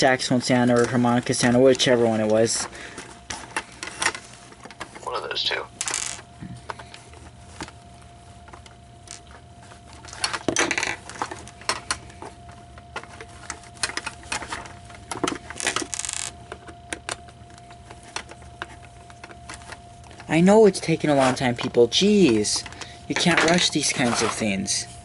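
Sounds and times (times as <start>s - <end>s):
small parts clicking and rattling: 5.8s - 6.2s, 13.0s - 17.2s.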